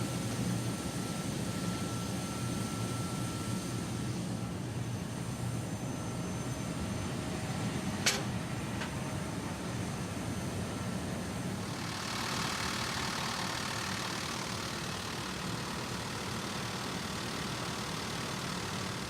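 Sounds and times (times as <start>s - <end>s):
engine rumble: 6.5s - 19.0s.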